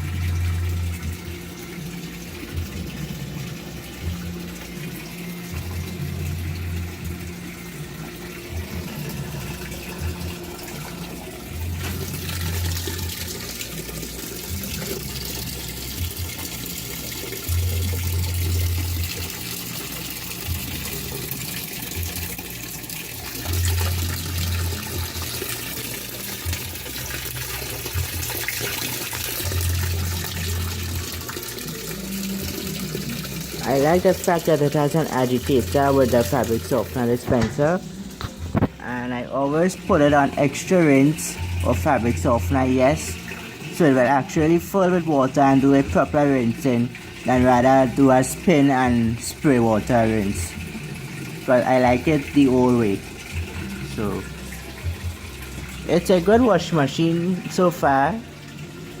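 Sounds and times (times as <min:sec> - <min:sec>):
washing machine filling with water: 0:00.0 - 0:59.0.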